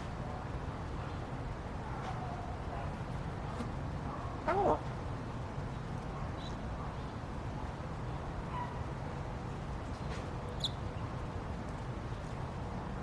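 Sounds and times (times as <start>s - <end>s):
parrot chirps and whistles: 10.6s - 10.8s.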